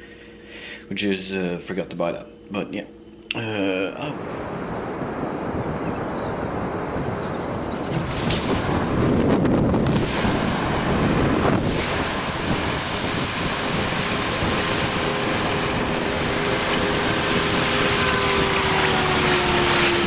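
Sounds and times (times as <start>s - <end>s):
wind blowing on microphone: 4.0s - 20.0s
ocean surf washing: 4.1s - 20.0s
faint steady drone: 10.0s - 20.0s.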